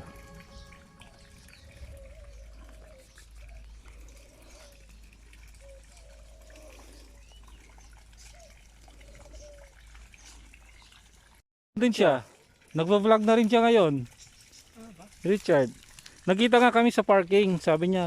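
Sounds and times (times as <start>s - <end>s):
bird calling low notes: 0.0s - 4.9s.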